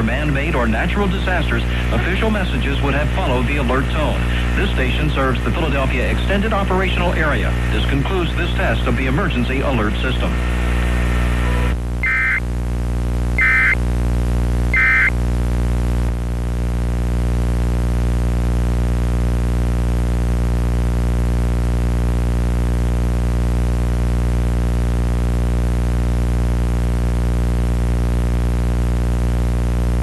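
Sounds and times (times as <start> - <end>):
loud electrical buzz: 10.3 - 12.5, 13.4 - 13.8, 14.8 - 15.2
shrill digital data bursts: 12.0 - 12.4, 13.4 - 13.8, 14.8 - 15.1.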